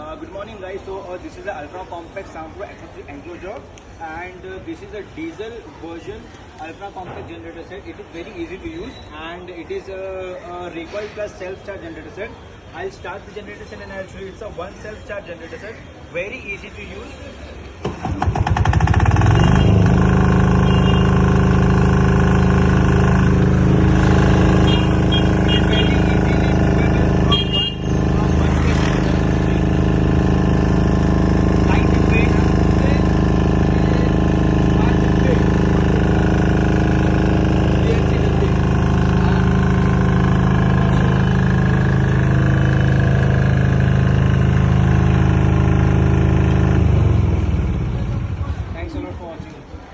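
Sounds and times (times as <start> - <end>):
generator engine running: 17.8 - 48.7.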